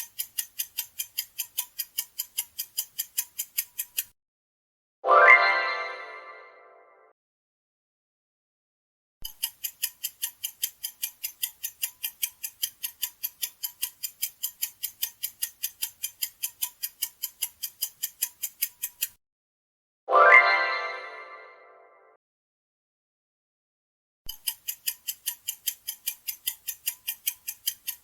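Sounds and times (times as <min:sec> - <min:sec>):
clock ticks: 0:00.0 - 0:04.1, 0:09.2 - 0:19.2, 0:24.3 - 0:28.0.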